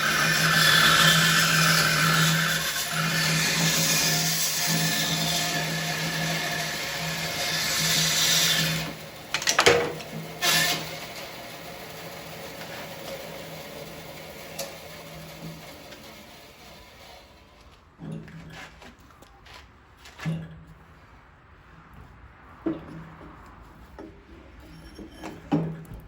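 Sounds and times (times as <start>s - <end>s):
bandsaw humming: 0.0s - 17.5s
bandsaw cutting wood: 0.0s - 17.6s
wood knocking: 9.3s - 10.1s.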